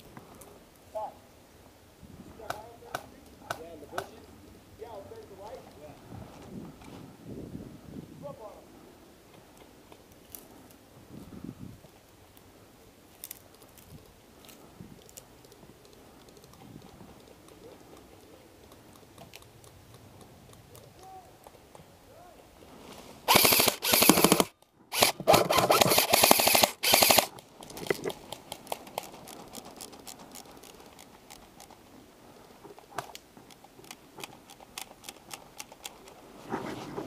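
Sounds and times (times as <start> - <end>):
faint ticks: 13.2 - 21.9
airsoft rifle full-auto bursts: 23.3 - 27.3.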